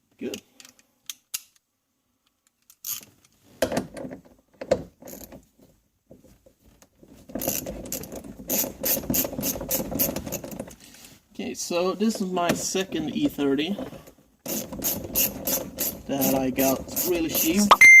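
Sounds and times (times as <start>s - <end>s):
tools and parts rattling: 7.3s - 10.8s.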